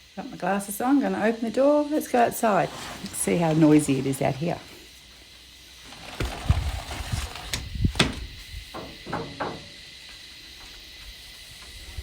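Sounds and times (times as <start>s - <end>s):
cicadas hissing: 0.0s - 12.0s
door opening with rattles: 5.9s - 9.7s.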